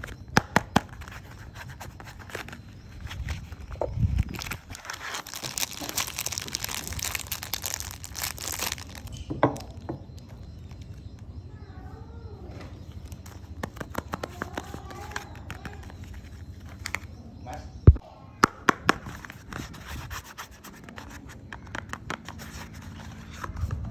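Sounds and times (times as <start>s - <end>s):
packaging tearing and crinkling: 2.2s - 9.8s.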